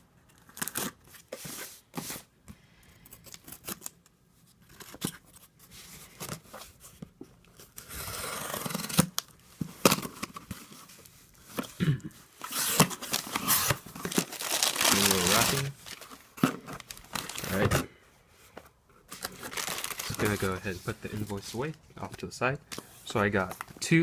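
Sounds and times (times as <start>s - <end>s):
cardboard tearing: 7.7s - 10.3s, 12.4s - 16.1s, 16.8s - 17.8s, 19.2s - 20.4s.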